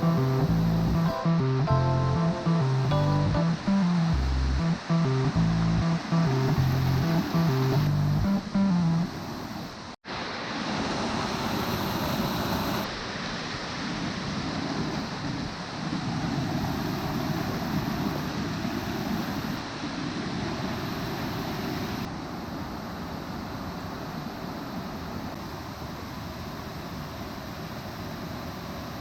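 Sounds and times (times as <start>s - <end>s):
waterfall roaring: 0.0s - 17.5s.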